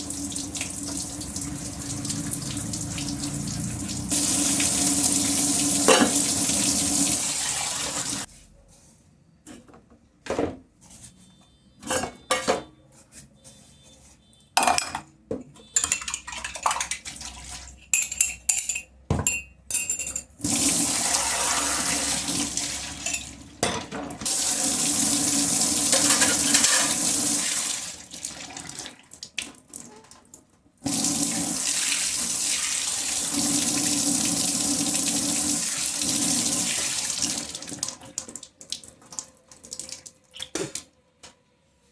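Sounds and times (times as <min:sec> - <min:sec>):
kitchen tap running: 0:00.0 - 0:08.3, 0:20.4 - 0:23.6, 0:24.2 - 0:29.9, 0:30.8 - 0:40.9
dishes clinking and knocking: 0:05.8 - 0:06.2, 0:11.8 - 0:12.7, 0:14.6 - 0:16.3, 0:17.8 - 0:20.4, 0:23.0 - 0:24.2, 0:25.9 - 0:27.0.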